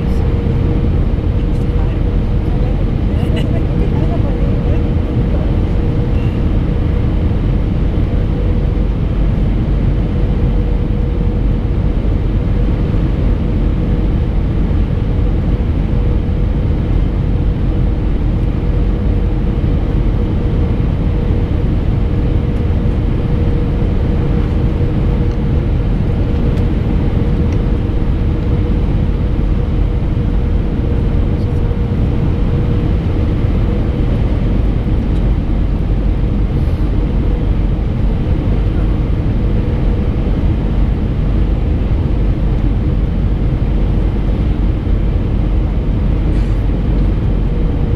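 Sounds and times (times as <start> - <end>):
airplane cabin rumble: 0.0 - 47.9
mid-pitched hum: 0.0 - 47.9.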